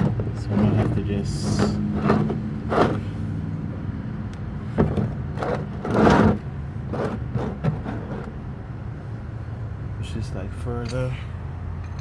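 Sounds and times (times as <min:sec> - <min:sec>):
plastic pan scraping on ground: 0:00.0 - 0:03.1, 0:04.7 - 0:08.4.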